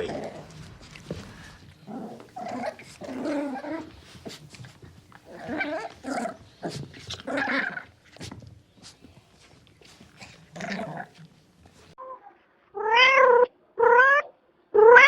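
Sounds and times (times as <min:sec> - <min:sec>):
animal calling: 0:12.0 - 0:15.0.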